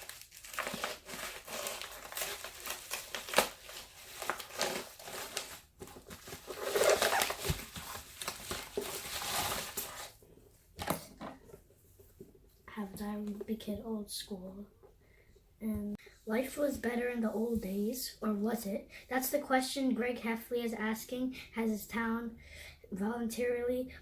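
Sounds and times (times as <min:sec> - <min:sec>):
packaging crinkling and rustling: 0:00.0 - 0:10.2.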